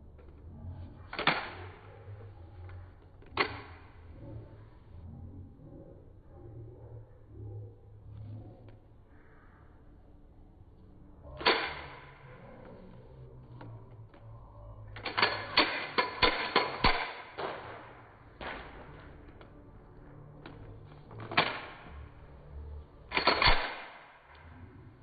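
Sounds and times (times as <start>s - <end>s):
pistol slide clacking: 1.1s - 1.9s, 15.0s - 18.8s, 23.1s - 24.4s.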